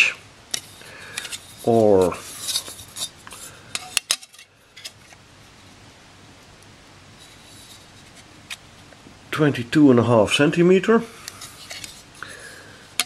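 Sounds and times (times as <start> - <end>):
rustling: 0.0 - 5.7, 7.1 - 9.0, 11.2 - 13.0.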